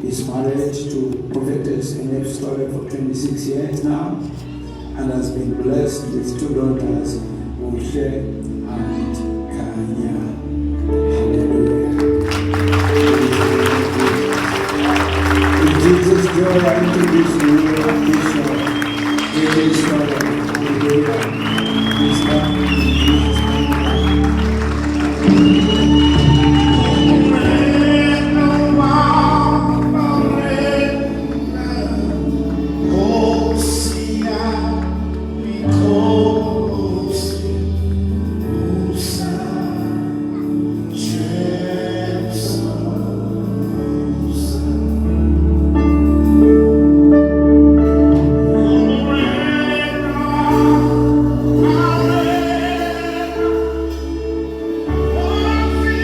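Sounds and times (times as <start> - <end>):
gospel singing: 4.9 - 56.0
band with bass and cymbals: 12.1 - 56.0.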